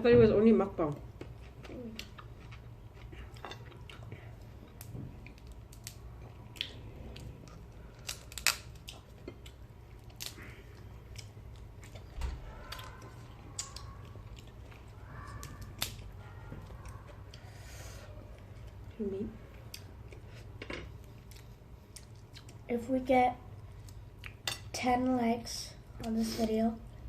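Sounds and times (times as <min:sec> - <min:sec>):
faint low hum: 0:00.0 - 0:27.0
chewing food: 0:01.0 - 0:17.5, 0:21.0 - 0:22.7.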